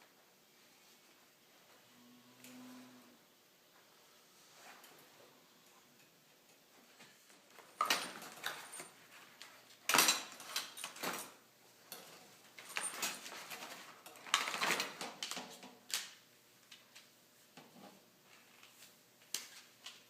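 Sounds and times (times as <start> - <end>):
metal parts clattering: 9.9 - 15.1.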